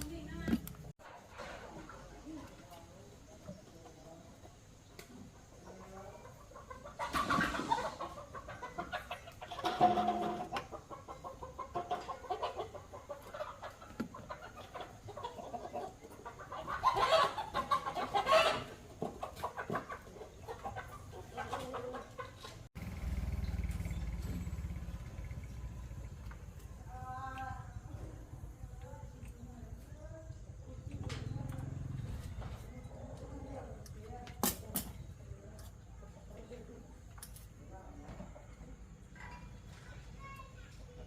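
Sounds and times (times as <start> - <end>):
chickens clucking: 0.0 - 22.7, 23.4 - 41.0.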